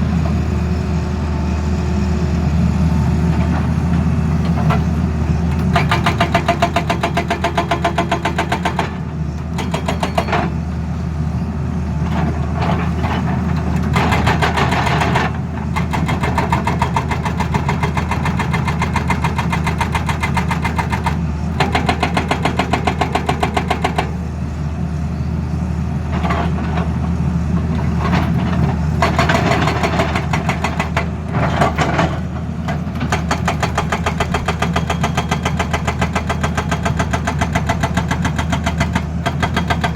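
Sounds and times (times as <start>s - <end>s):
diesel engine running: 0.0s - 39.9s
hydraulic breaker hammering: 13.9s - 24.2s.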